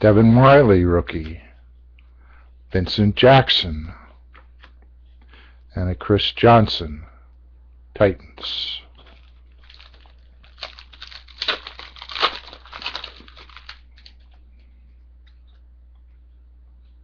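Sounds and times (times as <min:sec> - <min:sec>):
wrapper tearing and crinkling: 0:09.0 - 0:14.3.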